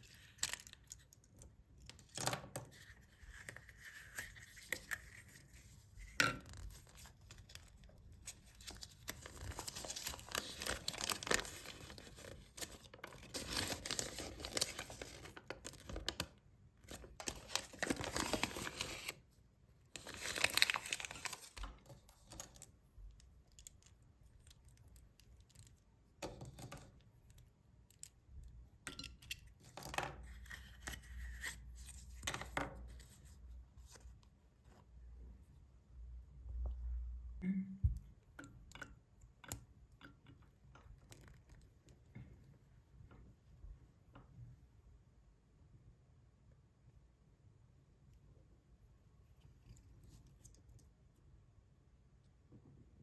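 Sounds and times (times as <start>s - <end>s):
foil wrappers tearing and crinkling: 20.0s - 21.6s.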